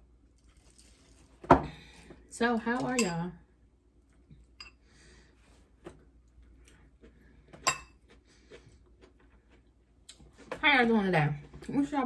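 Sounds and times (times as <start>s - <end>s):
soft chewing: 4.0s - 10.6s.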